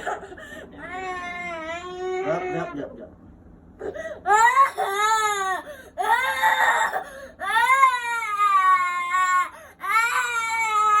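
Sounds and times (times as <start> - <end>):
baby crying: 3.8 - 11.0.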